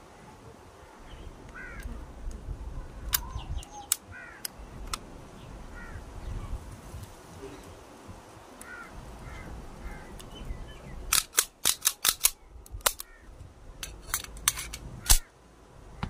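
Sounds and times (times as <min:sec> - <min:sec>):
pistol metallic clicks: 0:03.9 - 0:05.0, 0:11.1 - 0:13.1, 0:13.8 - 0:15.3.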